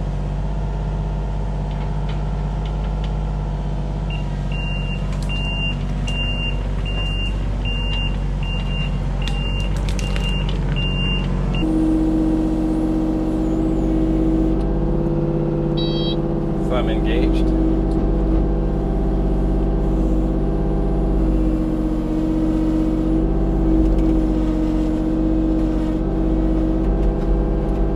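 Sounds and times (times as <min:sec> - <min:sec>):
diesel engine running: 0:00.0 - 0:27.9
high beeps: 0:15.8 - 0:16.2.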